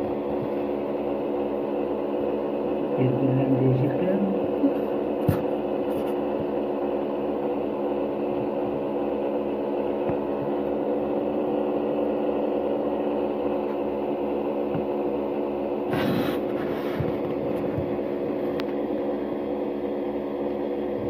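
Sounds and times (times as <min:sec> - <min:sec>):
incubator fan humming: 0:00.0 - 0:21.0.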